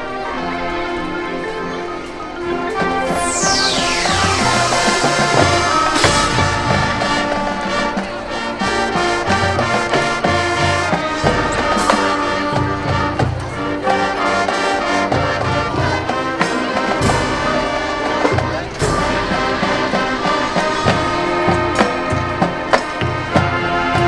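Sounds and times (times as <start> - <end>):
trumpets and trombones: 0.0 - 24.0
sharp accented hit: 2.8 - 8.4.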